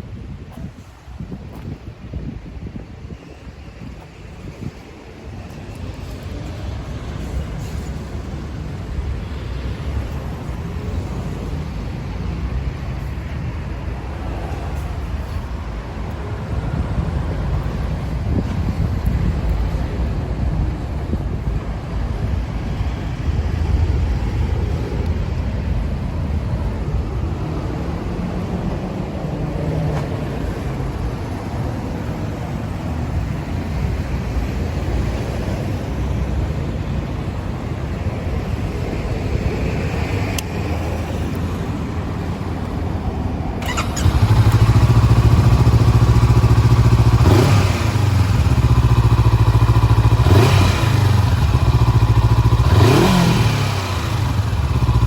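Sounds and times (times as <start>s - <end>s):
motorcycle engine revving: 43.6s - 55.0s.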